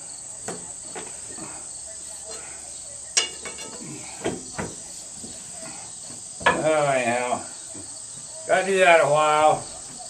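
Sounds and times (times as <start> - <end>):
crickets chirping: 0.0 - 10.0
metallic clank: 3.2 - 3.9.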